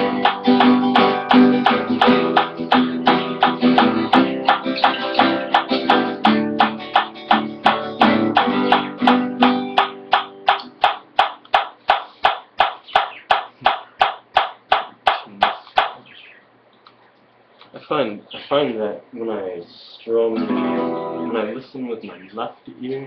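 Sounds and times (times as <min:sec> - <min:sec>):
guitar strummed with a pick: 0:00.0 - 0:11.1, 0:20.4 - 0:21.5.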